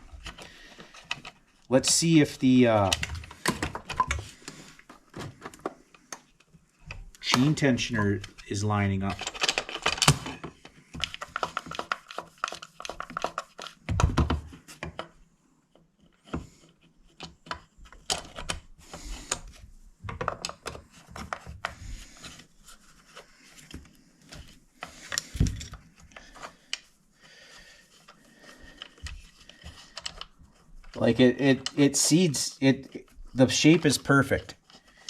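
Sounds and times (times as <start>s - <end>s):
plastic and metal parts clicking: 0.1s - 2.0s, 2.8s - 4.3s, 5.4s - 22.4s, 28.0s - 31.9s.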